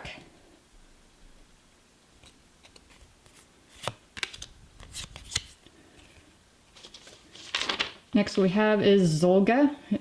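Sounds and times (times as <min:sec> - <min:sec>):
cards sliding and flicking: 0:02.2 - 0:06.2.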